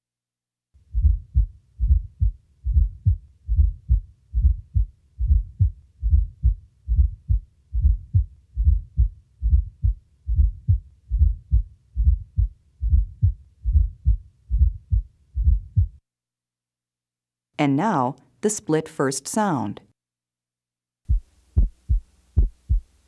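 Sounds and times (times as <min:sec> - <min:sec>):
low dull extra heart sound: 0:00.8 - 0:16.0, 0:21.1 - 0:23.0
heartbeat thuds: 0:00.9 - 0:16.0, 0:21.1 - 0:23.0.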